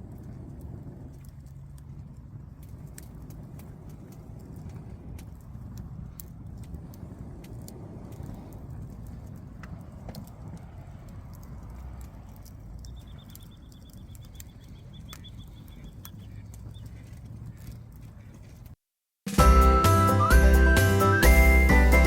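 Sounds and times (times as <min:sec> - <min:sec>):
low steady rumble: 0:00.0 - 0:18.8
campfire crackling and popping: 0:00.0 - 0:22.0.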